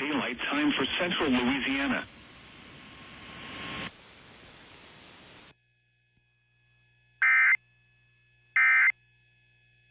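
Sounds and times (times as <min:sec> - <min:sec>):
radio hiss and static: 0:00.0 - 0:05.5.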